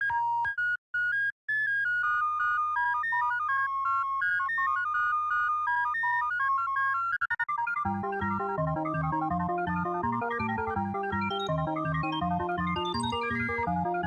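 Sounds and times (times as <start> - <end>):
electronic beeping tones: 7.9 - 14.0.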